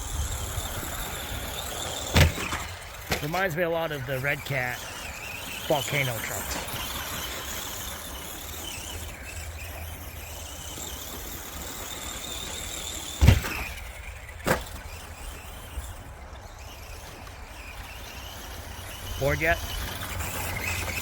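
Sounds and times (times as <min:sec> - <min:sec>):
electric motor whining: 0:00.0 - 0:21.0
thump: 0:02.2 - 0:02.6, 0:13.2 - 0:13.7, 0:14.5 - 0:14.7.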